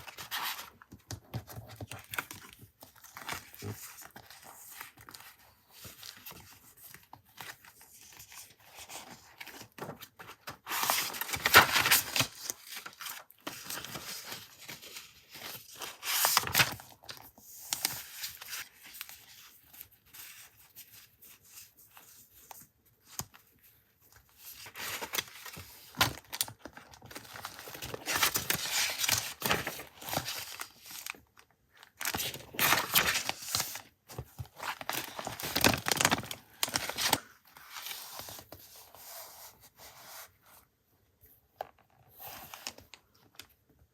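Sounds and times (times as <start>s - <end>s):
paper tearing and crinkling: 10.6s - 14.6s, 32.0s - 33.8s.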